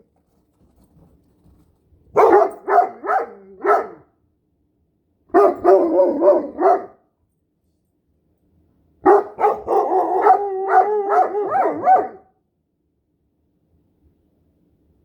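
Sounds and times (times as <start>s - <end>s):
dog howling: 9.1s - 12.2s.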